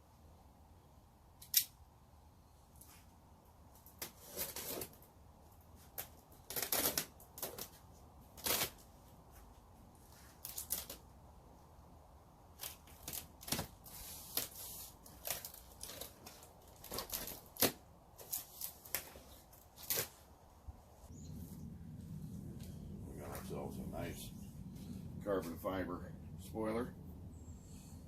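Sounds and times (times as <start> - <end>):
cardboard and packing rustling: 12.6 - 20.3.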